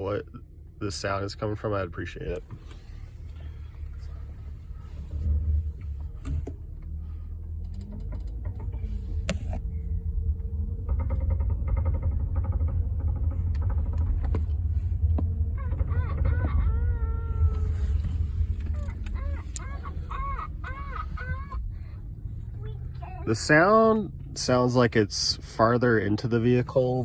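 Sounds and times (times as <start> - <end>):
minivan engine idling: 0.0 - 27.0
metallic clicks from steering: 5.8 - 9.7.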